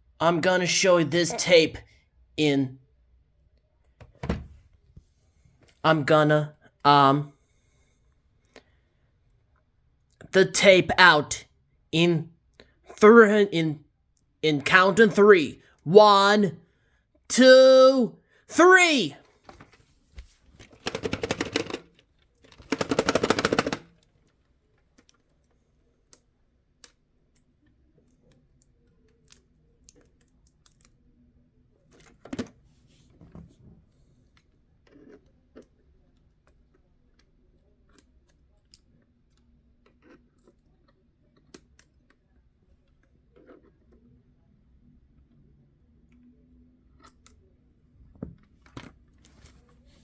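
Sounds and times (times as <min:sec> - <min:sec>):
rapid rattling bursts: 0:20.6 - 0:23.9.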